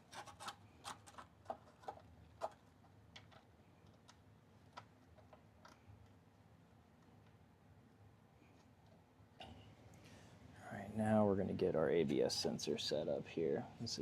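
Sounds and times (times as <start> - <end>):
small parts clicking and tapping: 0.0 - 6.2.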